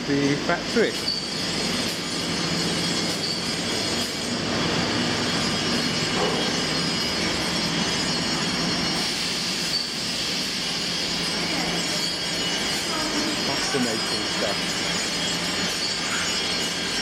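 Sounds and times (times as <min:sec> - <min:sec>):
factory machinery din: 0:00.0 - 0:17.0.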